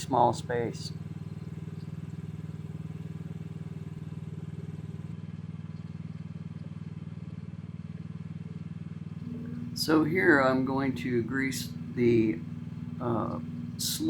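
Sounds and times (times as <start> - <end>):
diesel engine idling: 0.0 - 3.6, 9.2 - 14.0.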